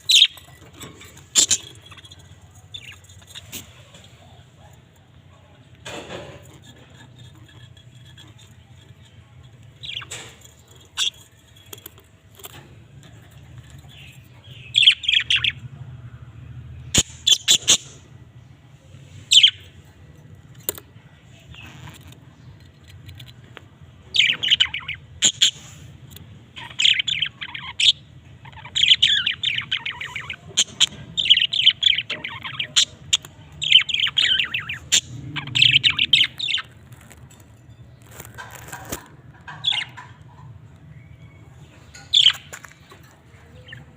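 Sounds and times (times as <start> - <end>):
budgerigars chirping: 0.0 - 4.8, 9.8 - 11.9, 12.5 - 15.6, 16.8 - 18.1, 19.2 - 19.8, 24.0 - 25.8, 26.4 - 37.2, 38.1 - 42.6.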